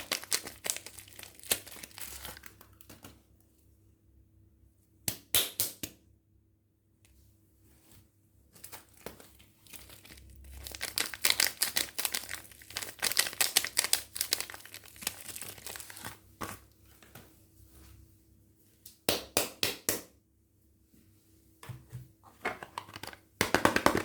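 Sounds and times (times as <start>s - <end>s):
packaging crinkling and tearing: 0.0s - 3.1s, 8.6s - 16.4s.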